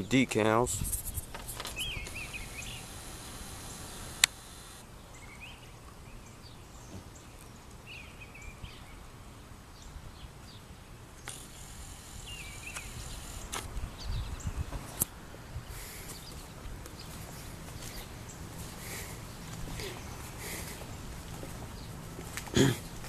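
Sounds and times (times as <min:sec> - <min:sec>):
steady hiss: 0:00.1 - 0:04.9, 0:11.2 - 0:21.7
small bird chirping: 0:00.8 - 0:05.7, 0:11.2 - 0:15.0
sharp click: 0:04.1 - 0:04.4, 0:12.2 - 0:13.7.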